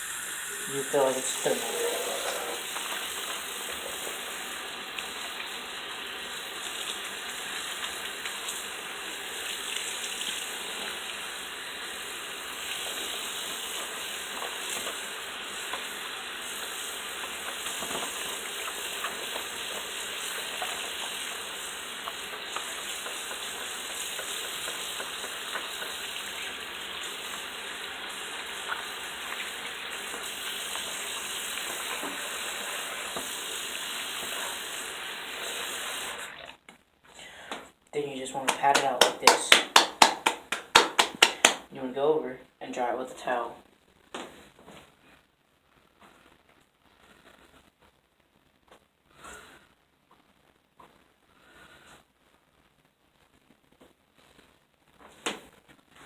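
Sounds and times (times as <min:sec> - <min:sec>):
tap water running into sink: 0:00.0 - 0:36.5, 0:38.4 - 0:41.7.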